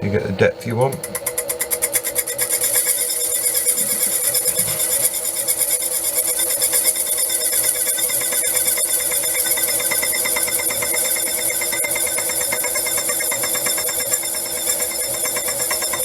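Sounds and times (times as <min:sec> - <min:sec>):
lathe cutting metal: 0:00.4 - 0:16.0.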